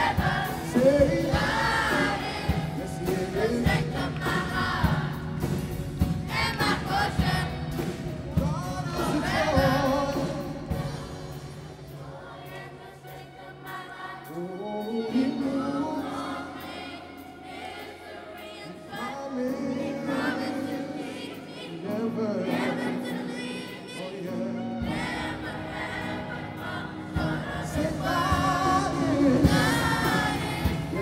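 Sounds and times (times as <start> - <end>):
drumbeats: 0.0 - 13.2, 24.8 - 31.0
children's choir singing: 0.0 - 31.0.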